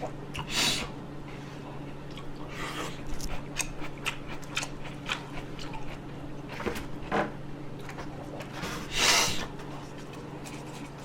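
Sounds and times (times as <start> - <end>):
person chewing food: 1.4 - 8.6.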